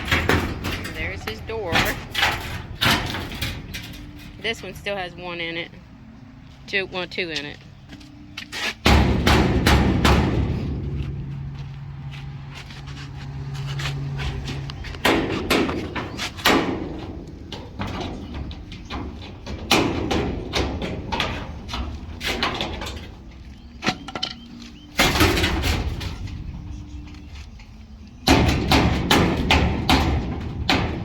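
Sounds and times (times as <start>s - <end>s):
metal knocks and bangs: 0.0s - 5.7s, 8.5s - 31.0s.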